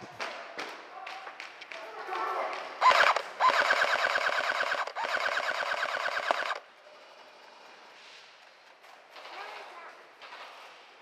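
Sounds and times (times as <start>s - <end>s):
airsoft gun firing bursts: 2.8s - 6.6s
gearbox whine: 2.8s - 6.6s.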